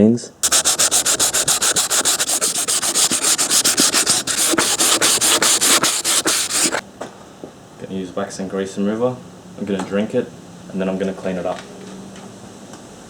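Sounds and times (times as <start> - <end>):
rapid sanding of rusty steel: 0.4 - 6.8.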